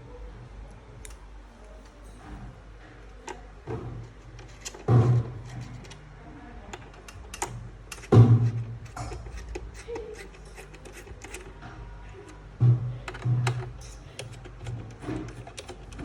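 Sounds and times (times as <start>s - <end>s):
hardware clicks and taps: 6.7s - 16.0s.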